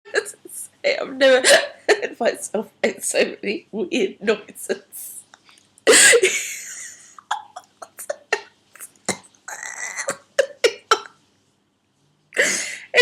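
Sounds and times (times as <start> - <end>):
woman coughing: 5.9 - 6.4, 10.1 - 11.2.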